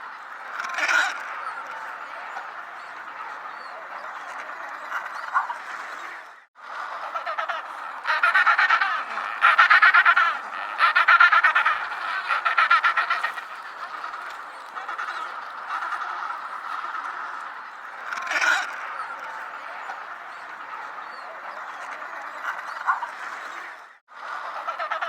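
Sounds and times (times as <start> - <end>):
penguin colony chorus: 0.0 - 25.0
penguin braying calls: 7.1 - 17.2.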